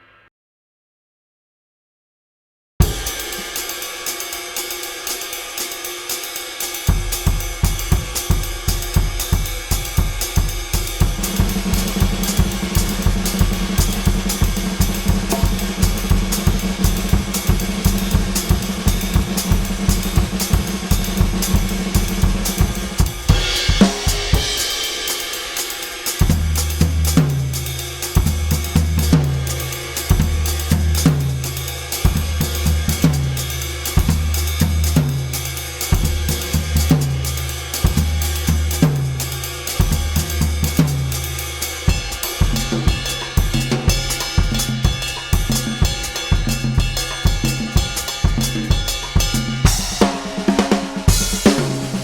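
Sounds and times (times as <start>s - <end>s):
bass drum: 6.9s - 25.1s, 26.2s - 52.0s
cymbal crash: 8.3s - 26.3s.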